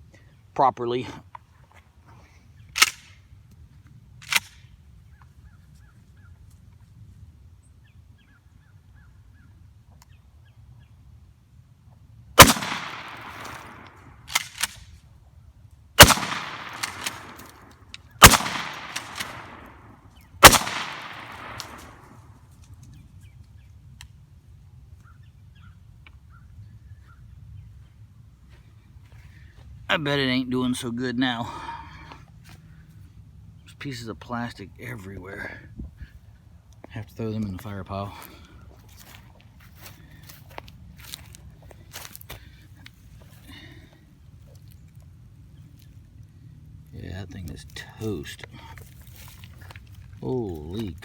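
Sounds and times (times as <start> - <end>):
shotgun blasts: 12.4 - 14.8, 16.0 - 22.2.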